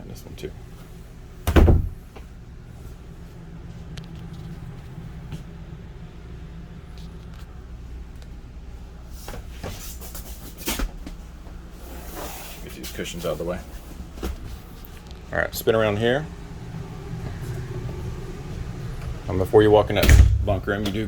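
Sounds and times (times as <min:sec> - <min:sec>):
low hum: 0:00.6 - 0:09.1, 0:14.6 - 0:21.0
knocks and clunks of bunk beds: 0:01.4 - 0:02.3, 0:18.0 - 0:21.0
sharp thump: 0:20.0 - 0:20.6.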